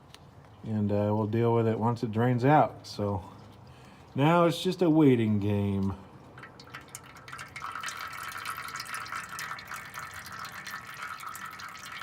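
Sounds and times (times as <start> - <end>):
oil dripping into a tray: 5.8 - 12.0.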